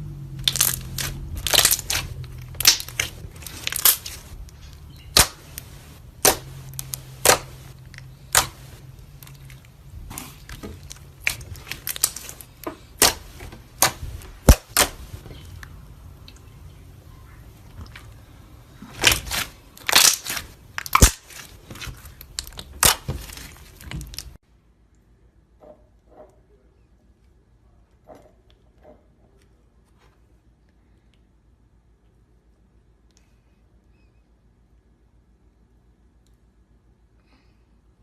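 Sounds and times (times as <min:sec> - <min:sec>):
low steady hum: 0:00.0 - 0:38.0
slime squished by hand: 0:00.3 - 0:24.4.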